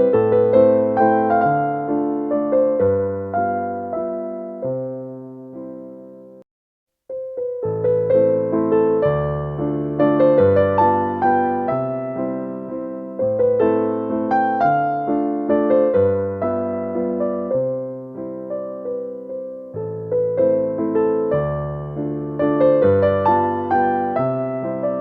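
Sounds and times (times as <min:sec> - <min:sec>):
gentle piano music: 0:00.0 - 0:06.4, 0:07.1 - 0:25.0.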